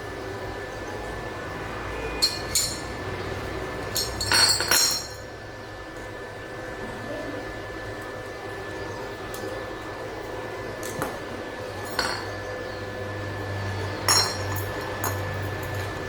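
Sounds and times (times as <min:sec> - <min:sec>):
hard objects clinking: 0:02.2 - 0:02.9, 0:03.9 - 0:05.2, 0:11.8 - 0:12.4, 0:14.1 - 0:16.0.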